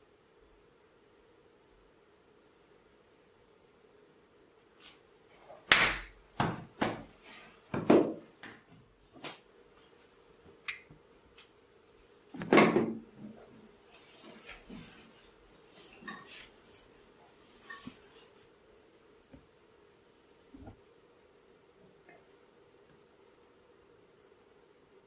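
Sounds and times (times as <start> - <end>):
sharp massage taps: 5.7 - 7.0.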